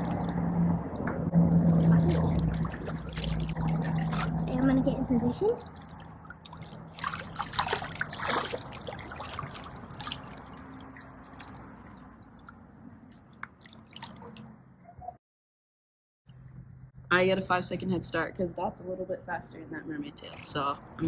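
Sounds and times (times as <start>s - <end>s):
pool water splashing: 0.0s - 14.7s, 20.1s - 21.0s.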